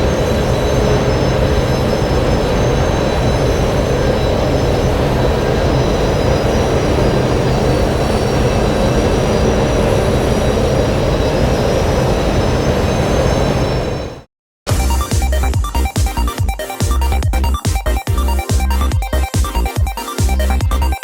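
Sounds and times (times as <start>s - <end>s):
starfighter engine drone: 0.0s - 14.3s.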